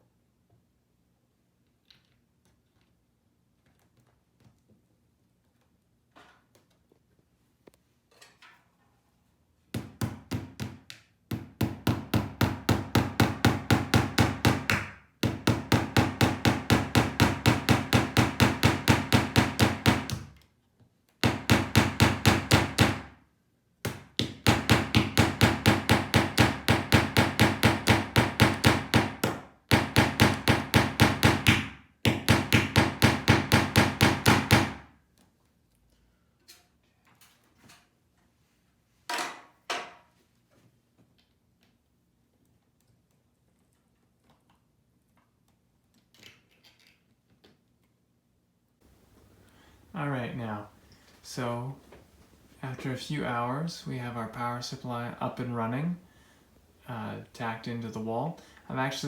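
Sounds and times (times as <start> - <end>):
hammer tapping nails: 9.8 - 20.4, 21.2 - 23.1, 23.8 - 34.9.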